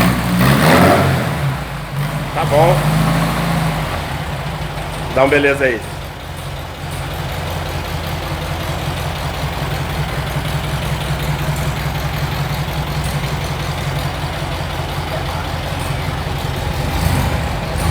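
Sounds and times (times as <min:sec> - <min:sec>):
car engine idling: 0:00.0 - 0:17.9.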